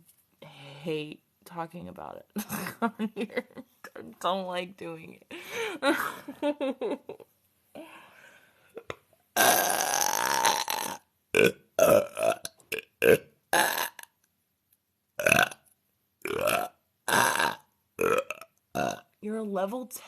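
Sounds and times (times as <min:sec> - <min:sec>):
woman burping: 0:08.8 - 0:14.1, 0:16.3 - 0:19.1.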